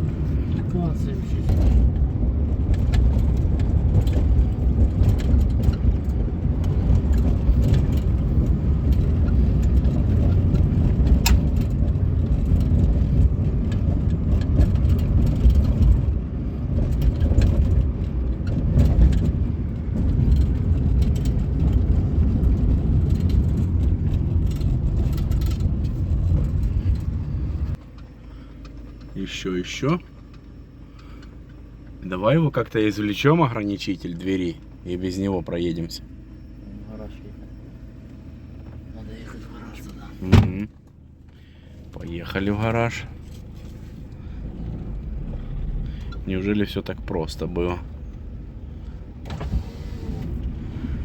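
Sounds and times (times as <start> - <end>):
light interior clicks and knocks: 0.0 - 32.0, 38.1 - 51.0
car road and engine rumble: 0.0 - 51.0.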